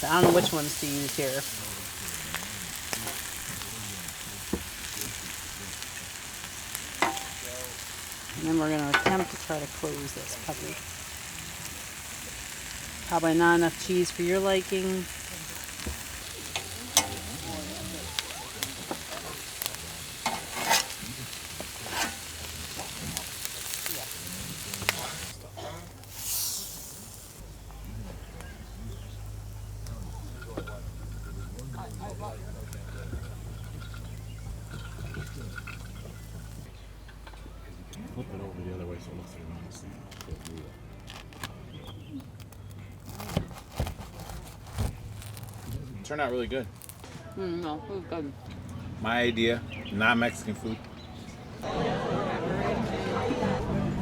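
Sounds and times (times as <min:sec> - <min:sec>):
sandwiches sizzling in a pan: 0:00.0 - 0:39.0, 0:40.1 - 0:47.2
rustling handling sounds: 0:39.7 - 0:47.4.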